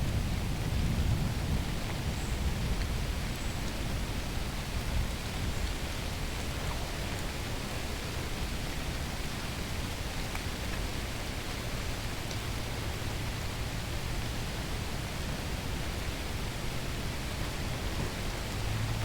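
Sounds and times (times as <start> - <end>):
rain rushing noise: 0.0 - 19.0.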